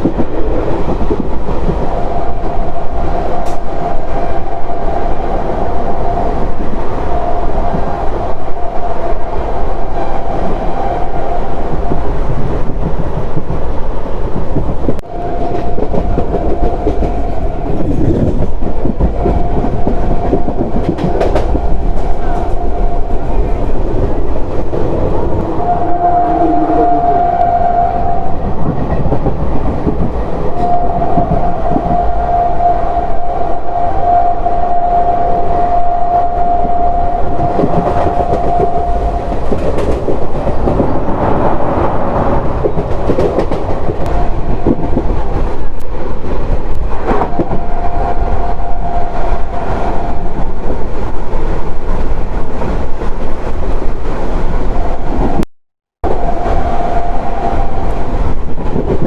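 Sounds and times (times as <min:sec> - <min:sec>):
train coach rumbling: 0:00.0 - 0:59.0
steady high tone: 0:19.2 - 0:29.1.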